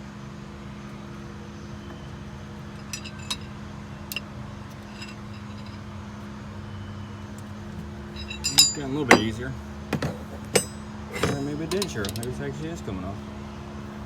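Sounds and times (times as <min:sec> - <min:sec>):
steady low hum: 0:00.8 - 0:14.0
sharp metallic clinks: 0:02.8 - 0:05.9, 0:08.0 - 0:12.3.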